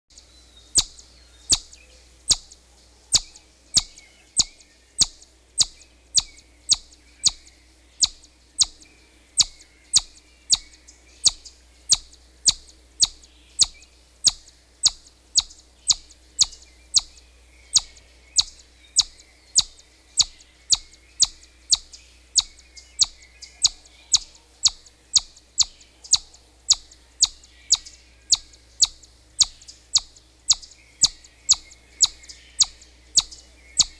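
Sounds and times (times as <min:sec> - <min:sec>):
squirrel chipping calls: 0:00.7 - 0:33.9.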